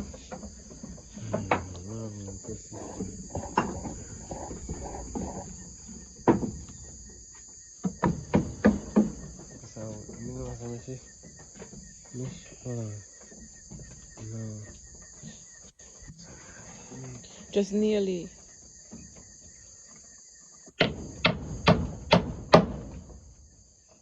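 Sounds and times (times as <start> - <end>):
night insects chorus: 0.0 - 24.0
sharp knocks: 6.1 - 6.9, 7.8 - 10.5, 20.8 - 23.2.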